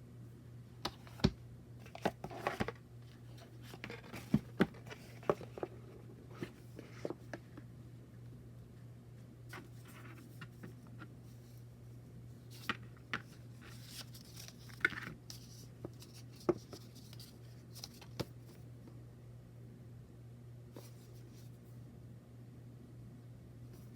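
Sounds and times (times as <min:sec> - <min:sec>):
low steady hum: 0:00.0 - 0:23.9
cards rustling: 0:12.6 - 0:18.6.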